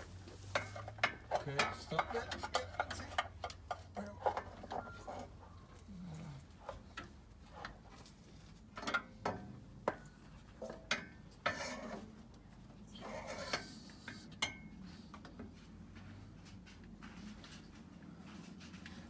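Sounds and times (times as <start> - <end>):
metal scrapes: 11.4 - 12.1, 13.0 - 14.3.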